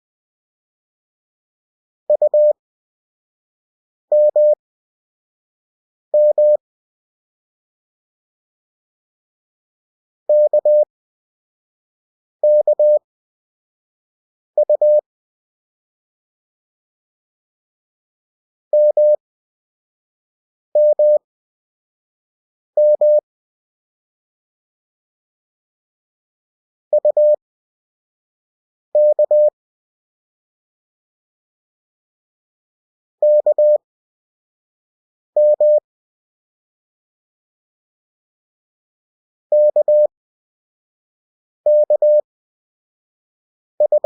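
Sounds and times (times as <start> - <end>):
morse code beeps: 2.1 - 2.5, 4.1 - 4.6, 6.2 - 6.6, 10.3 - 10.9, 12.4 - 13.0, 14.6 - 15.0, 18.8 - 19.2, 20.8 - 21.2, 22.8 - 23.2, 26.9 - 27.4, 29.0 - 29.5, 33.2 - 33.8, 35.4 - 35.8, 39.6 - 40.1, 41.7 - 42.2, 43.8 - 44.0.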